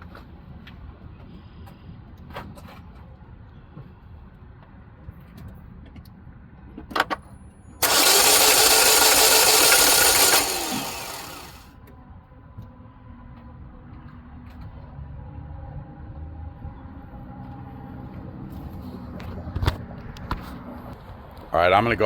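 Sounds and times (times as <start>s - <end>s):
sharp clicks: 7.8s - 11.6s
starter motor cranking engine: 7.8s - 11.6s.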